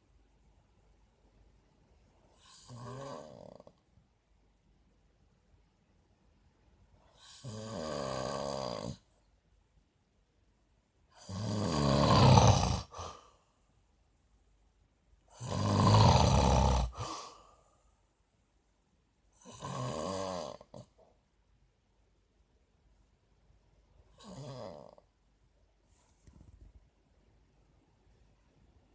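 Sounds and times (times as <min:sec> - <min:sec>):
man snoring: 0:02.4 - 0:03.8, 0:07.2 - 0:09.1, 0:11.2 - 0:13.2, 0:15.3 - 0:17.3, 0:19.4 - 0:20.9, 0:24.2 - 0:25.0.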